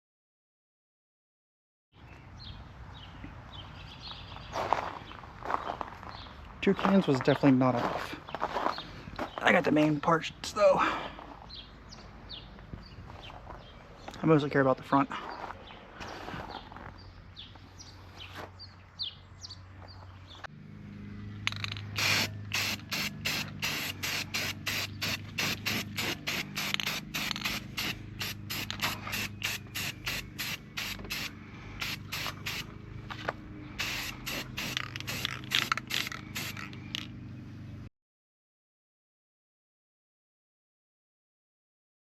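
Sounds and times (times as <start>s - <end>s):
spray can hissing bursts: 22.0s - 32.7s, 33.8s - 36.8s.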